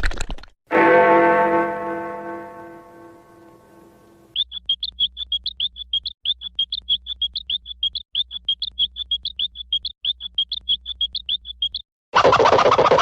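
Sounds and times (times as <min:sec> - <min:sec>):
rapid high-pitched chirping: 0:04.3 - 0:11.8.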